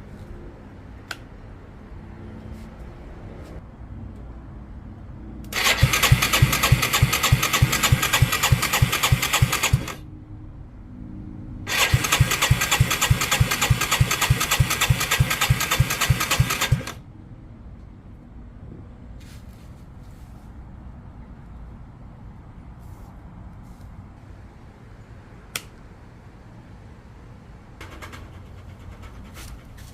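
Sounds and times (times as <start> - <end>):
electric starter cranking engine: 5.5 - 10.0, 11.7 - 17.0.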